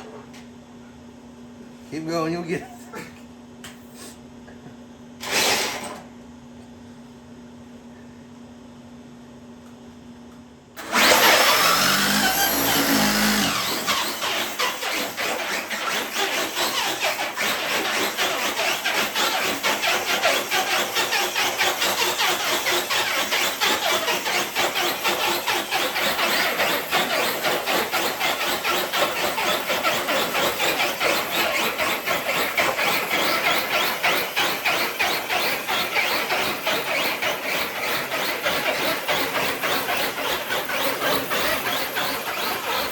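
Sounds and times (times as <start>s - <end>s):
rc truck motor whining: 10.8s - 42.9s.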